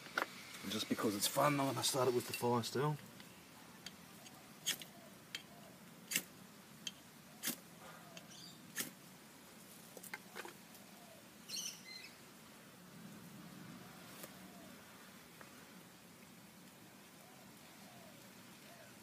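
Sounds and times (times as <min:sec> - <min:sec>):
fire steel scraping: 0:00.0 - 0:02.8.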